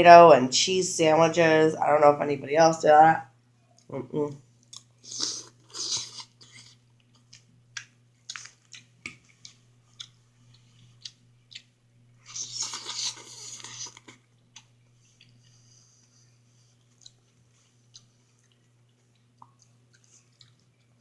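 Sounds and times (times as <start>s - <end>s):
chewing soft food: 4.5s - 21.0s.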